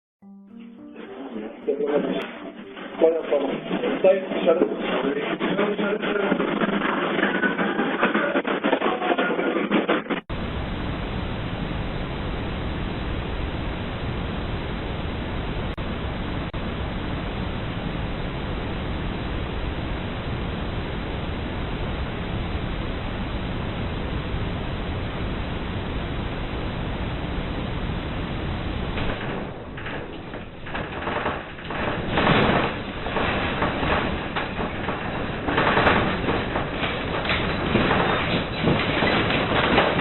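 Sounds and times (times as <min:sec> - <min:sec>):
steady rush of noise: 0:09.7 - 0:40.0.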